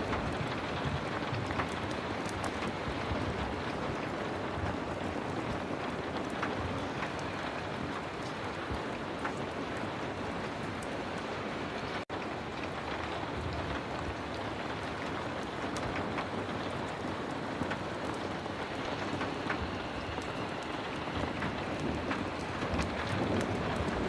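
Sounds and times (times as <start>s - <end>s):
heavy rain hissing: 12.8s - 24.0s.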